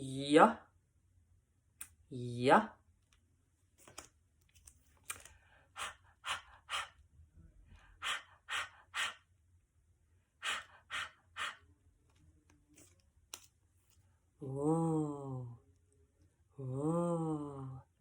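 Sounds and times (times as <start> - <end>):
woman puffing breathy air: 10.4 - 11.6.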